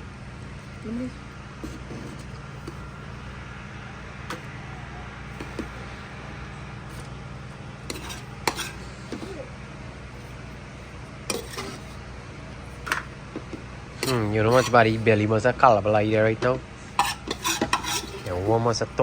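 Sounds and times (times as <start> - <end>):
low steady hum: 0.0 - 19.0
metal spoon scraping a pot: 1.6 - 2.9, 7.8 - 9.4, 11.3 - 12.1, 12.7 - 15.2, 16.8 - 18.8.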